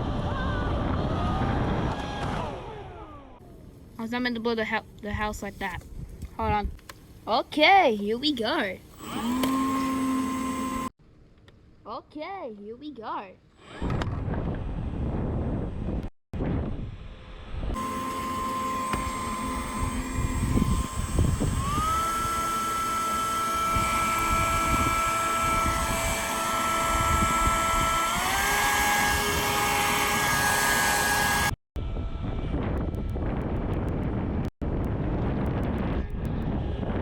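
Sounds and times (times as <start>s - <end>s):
leaf blower running: 8.8s - 10.9s, 17.8s - 31.6s.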